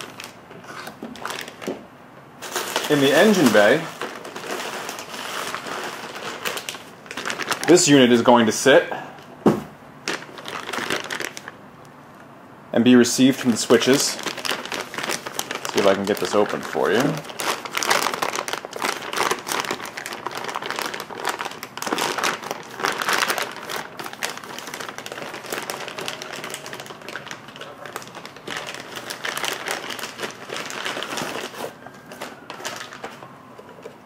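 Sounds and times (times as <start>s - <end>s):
packaging wrap crinkling: 0.0s - 1.8s, 2.4s - 8.4s, 10.0s - 11.6s, 13.2s - 34.0s
faint siren: 31.3s - 34.0s.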